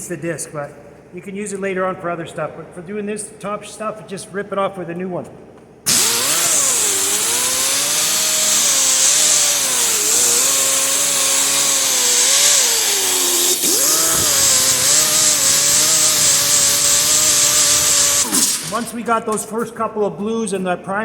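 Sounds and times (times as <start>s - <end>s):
abrasive disc grinding paint: 5.9s - 19.4s.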